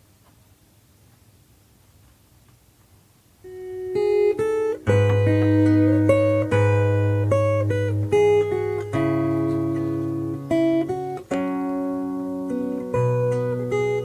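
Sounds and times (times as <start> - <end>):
plucked guitar notes and chords: 3.4 - 14.0.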